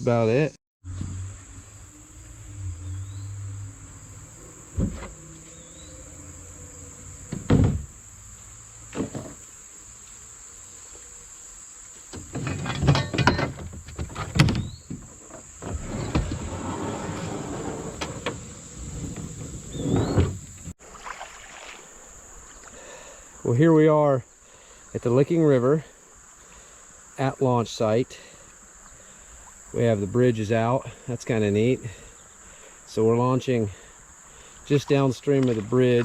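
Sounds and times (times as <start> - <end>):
insects buzzing: 0.8 - 36.0
knocks and thumps: 4.7 - 5.2, 7.2 - 7.9, 8.9 - 9.4.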